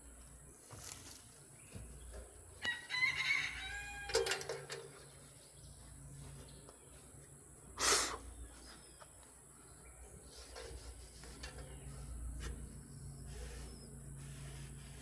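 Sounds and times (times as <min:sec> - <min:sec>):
rooster crowing: 0:02.6 - 0:04.5.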